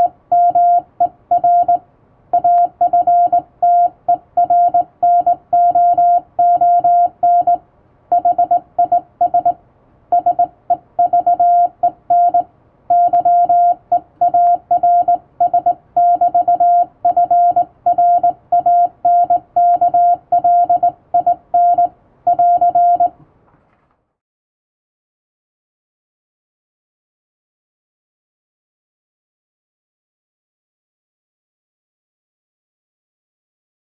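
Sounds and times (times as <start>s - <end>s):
morse code beeps: 0.0s - 1.8s, 2.4s - 23.2s.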